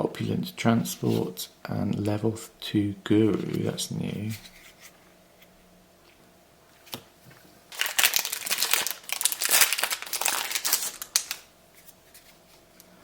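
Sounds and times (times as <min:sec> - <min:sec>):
wrapper crinkling and tearing: 0:07.7 - 0:11.5.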